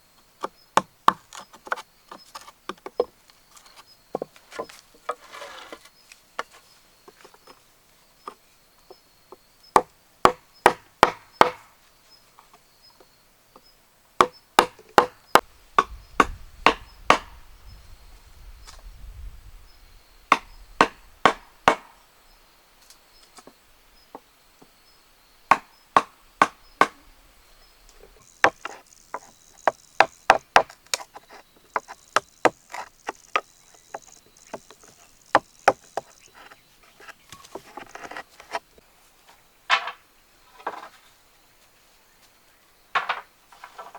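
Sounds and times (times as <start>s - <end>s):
chopping strikes on wood: 9.8s - 11.8s, 14.2s - 17.4s, 20.3s - 22.0s, 25.5s - 27.0s, 28.4s - 36.5s.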